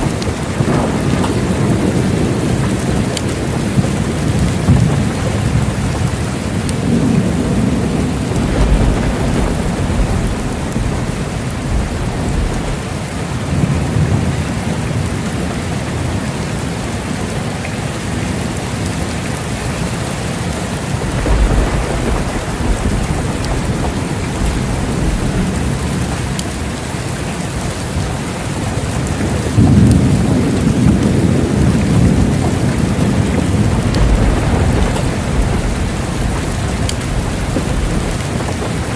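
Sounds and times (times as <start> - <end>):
low thunder rumbling: 0.0 - 17.3, 18.2 - 38.9
heavy rain falling: 0.0 - 38.9.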